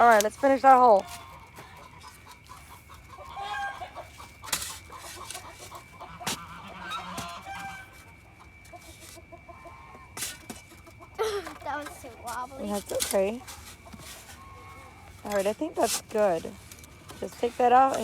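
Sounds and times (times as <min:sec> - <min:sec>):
chickens clucking: 0:00.0 - 0:18.0
shovel digging into soil: 0:04.0 - 0:07.7, 0:12.3 - 0:14.4, 0:15.2 - 0:18.0.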